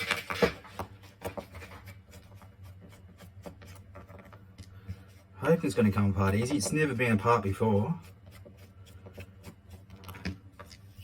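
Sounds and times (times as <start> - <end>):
pry tools scraping plastic: 6.2 - 7.2.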